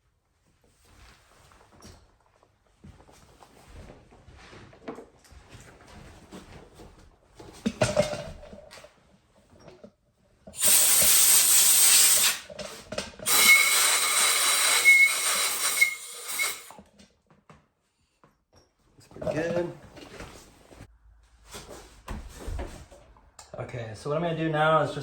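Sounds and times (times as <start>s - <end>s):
hissing spray: 10.6s - 12.5s, 13.3s - 16.7s.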